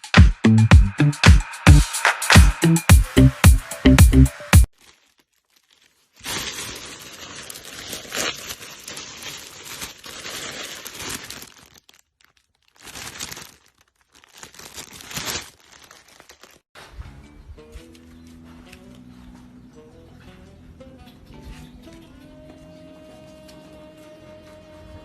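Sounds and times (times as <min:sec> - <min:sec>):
rustling crinkling with clicks: 0:04.7 - 0:16.9.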